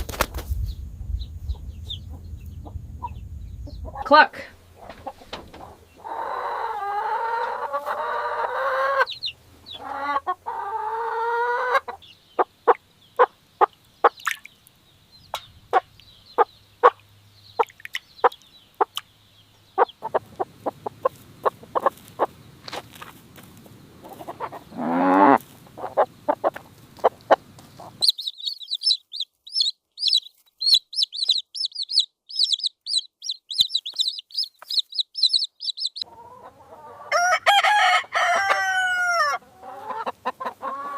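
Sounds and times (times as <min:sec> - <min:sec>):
chickens calling and clucking: 0:01.5 - 0:40.9.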